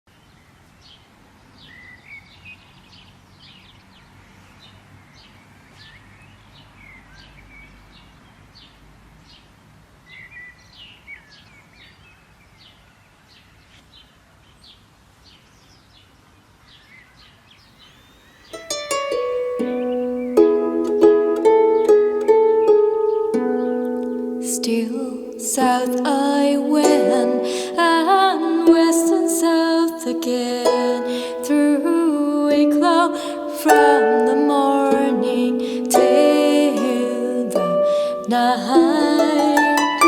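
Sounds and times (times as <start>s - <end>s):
faint low background noise: 0.1s - 40.0s
birds chirping and trilling: 16.7s - 20.4s, 21.8s - 26.2s.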